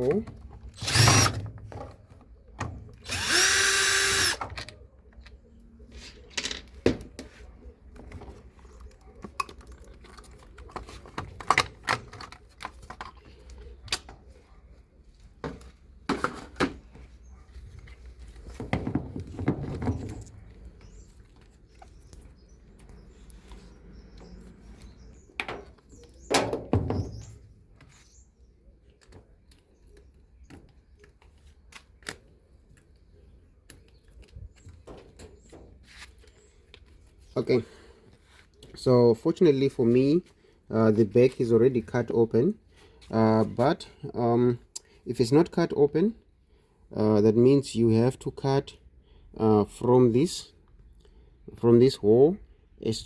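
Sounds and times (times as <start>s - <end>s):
electric screwdriver running: 0.8s - 1.3s, 3.0s - 4.4s
clicks and knocks of parts handled: 6.0s - 7.3s, 8.0s - 14.2s.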